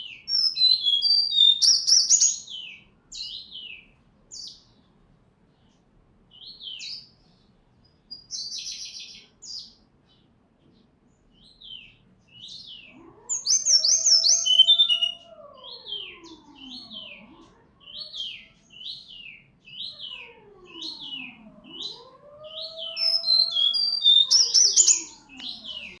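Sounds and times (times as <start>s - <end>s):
bird whistled song: 0.0s - 3.8s, 12.4s - 17.2s, 17.8s - 26.0s.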